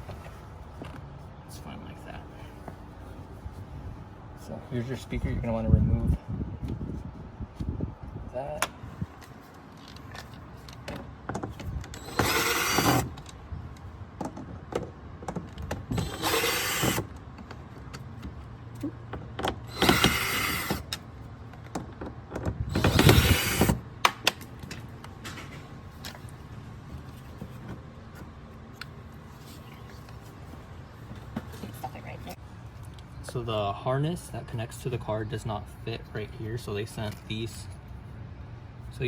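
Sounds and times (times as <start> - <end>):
cordless drill running: 12.0 - 13.2, 15.9 - 17.1, 19.7 - 20.9, 22.7 - 23.8.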